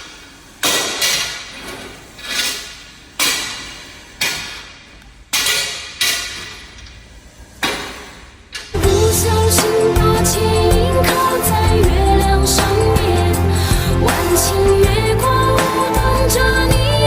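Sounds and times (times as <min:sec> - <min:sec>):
heavy strikes: 0:08.8 - 0:17.0.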